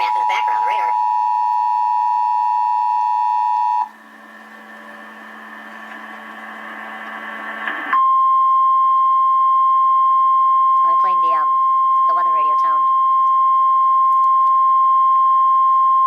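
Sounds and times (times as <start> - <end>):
weather radio alert tone: 0.0 - 3.9, 10.8 - 13.1
hiss with low hum: 3.9 - 8.0.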